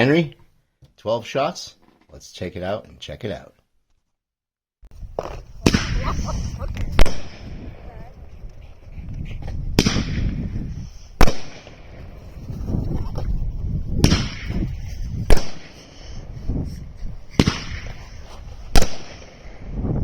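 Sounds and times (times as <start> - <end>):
firework bangs: 5.2 - 7.8, 9.7 - 10.6, 11.2 - 12.2, 13.9 - 16.0, 17.3 - 18.0, 18.7 - 19.7.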